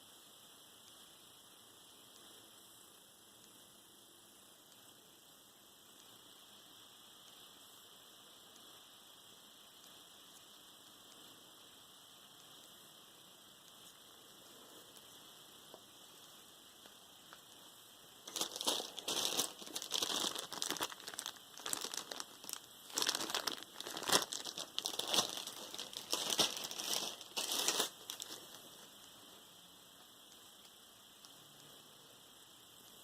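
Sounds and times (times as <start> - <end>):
faint hiss and hum: 0.0 - 33.0
packaging crinkling: 18.3 - 28.6.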